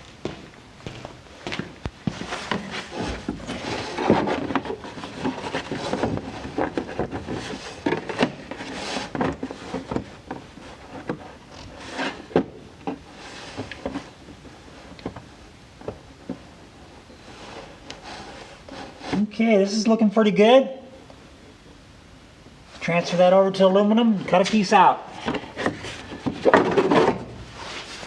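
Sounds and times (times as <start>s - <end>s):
cardboard rustling and rubbing: 2.0s - 15.0s, 16.2s - 19.2s, 25.1s - 28.0s.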